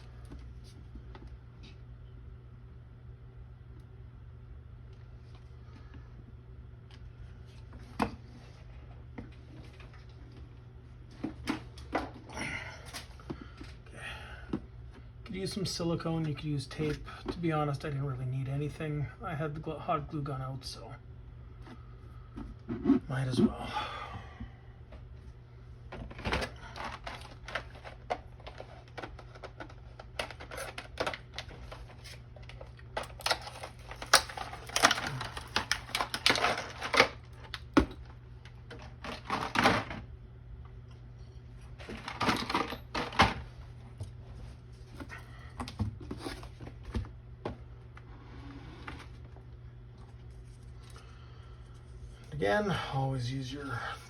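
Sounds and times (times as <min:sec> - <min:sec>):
steady low hum: 0:00.0 - 0:54.0
small hard parts clattering: 0:26.1 - 0:38.0.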